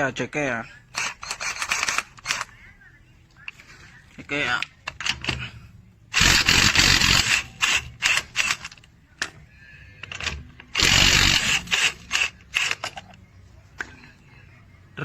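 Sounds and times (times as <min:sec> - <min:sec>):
impact wrench hammering: 0:06.2 - 0:08.7, 0:10.2 - 0:13.0.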